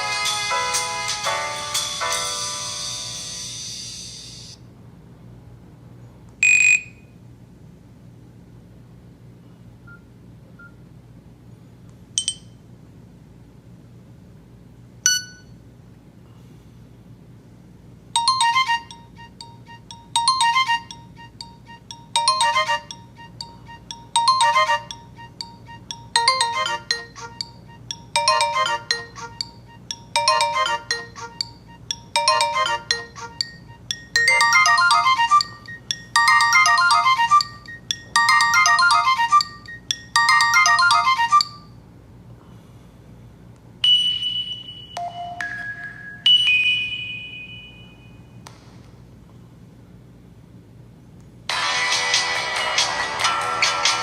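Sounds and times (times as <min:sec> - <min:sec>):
different phone tone: 0:18.2 - 0:41.7
mobile phone ringtone melody: 0:18.2 - 0:41.7, 0:43.8 - 0:48.2.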